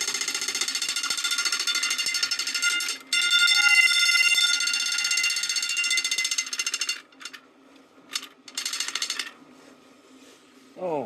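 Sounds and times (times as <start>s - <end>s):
fire alarm bell ringing: 0.0s - 7.1s.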